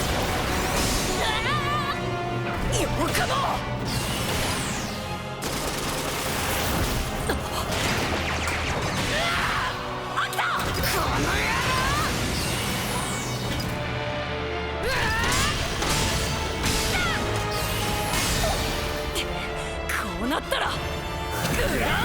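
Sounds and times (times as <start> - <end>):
dramatic background music: 0.0 - 22.0.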